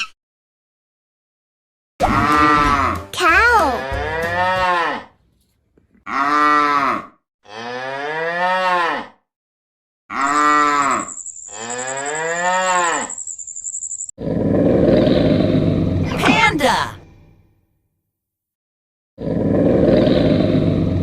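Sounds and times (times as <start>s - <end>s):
cow mooing: 3.8s - 5.2s, 6.1s - 9.2s, 10.1s - 13.1s.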